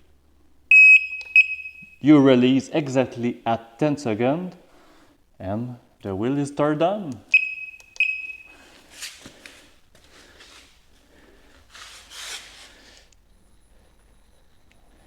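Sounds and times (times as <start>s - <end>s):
short high-pitched beeps: 0.7s - 2.0s, 7.3s - 8.6s
soft rustling: 8.5s - 13.0s.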